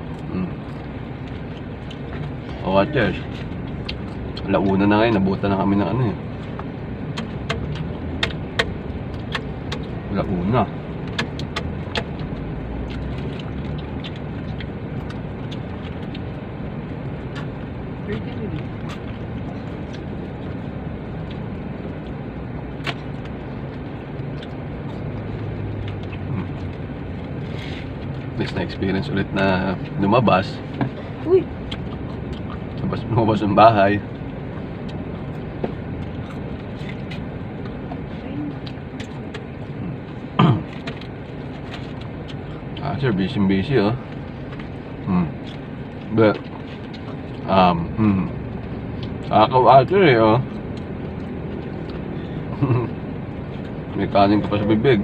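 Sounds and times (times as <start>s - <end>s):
car cabin hum: 0.0s - 55.0s
small clicks and rustles: 34.1s - 42.7s.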